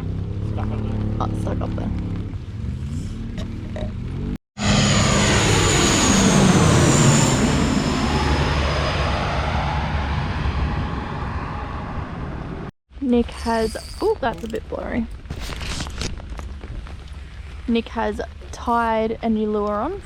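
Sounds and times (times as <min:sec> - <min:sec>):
aircraft engine roar: 0:04.0 - 0:12.7.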